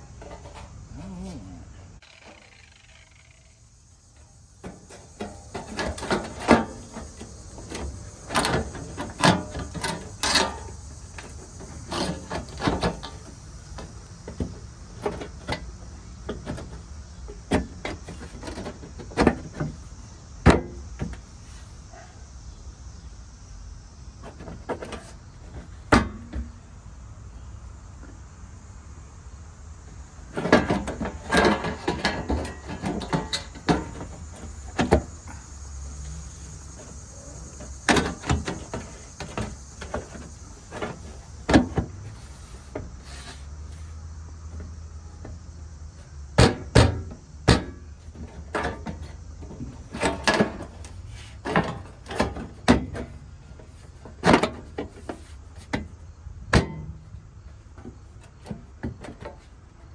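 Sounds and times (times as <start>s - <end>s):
sheet metal and tools clattering: 4.6s - 16.8s, 30.3s - 35.4s.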